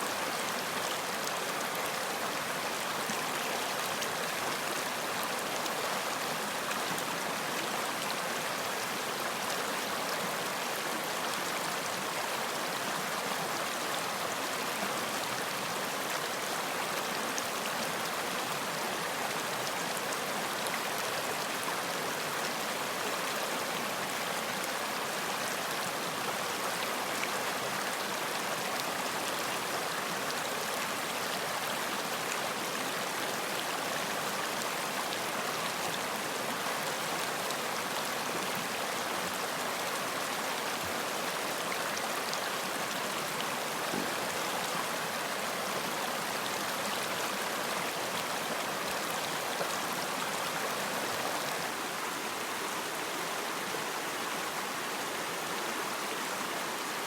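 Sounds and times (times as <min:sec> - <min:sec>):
running water: 0:26.6 - 0:54.8.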